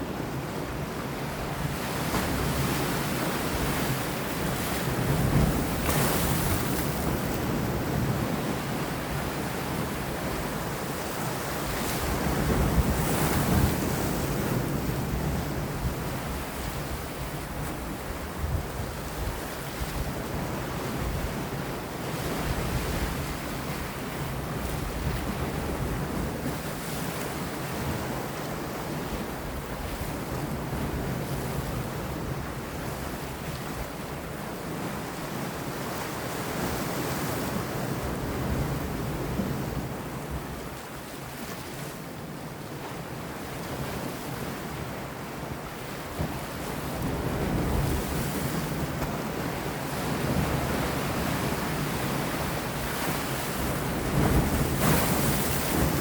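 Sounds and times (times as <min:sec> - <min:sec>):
wind: 0:00.0 - 0:56.0
waves breaking against rocks: 0:45.6 - 0:56.0.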